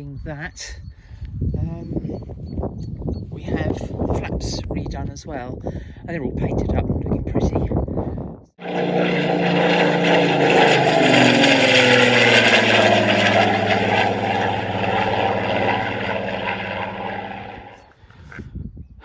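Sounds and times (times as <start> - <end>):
propeller aircraft engine drone: 8.6 - 17.9.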